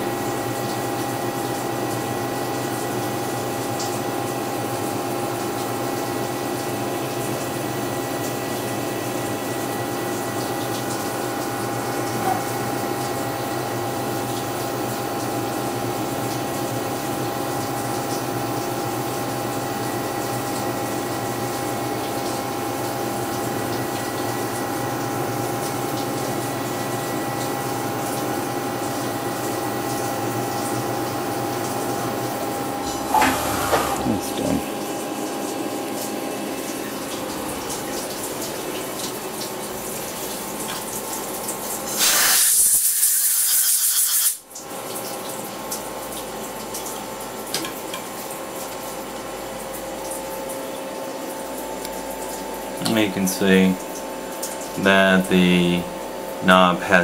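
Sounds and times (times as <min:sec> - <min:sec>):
metal cutting noise: 0:32.8 - 0:34.7.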